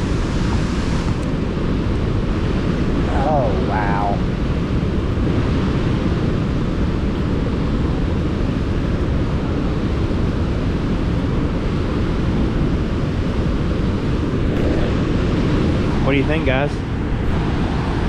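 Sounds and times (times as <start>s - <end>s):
wind buffeting microphone: 0.0s - 18.0s
roar of falling water: 3.0s - 4.4s.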